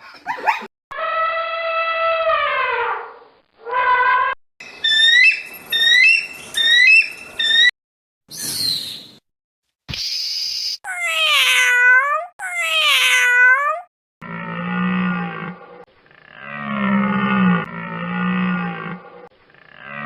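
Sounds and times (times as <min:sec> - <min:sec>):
animal pitched cries: 0:00.9 - 0:03.0, 0:10.9 - 0:13.9.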